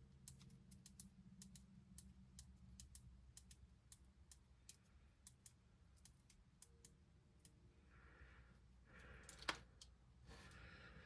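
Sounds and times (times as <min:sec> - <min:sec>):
small parts clicking: 0:00.0 - 0:07.6, 0:09.0 - 0:10.0
low room hum: 0:00.0 - 0:11.0.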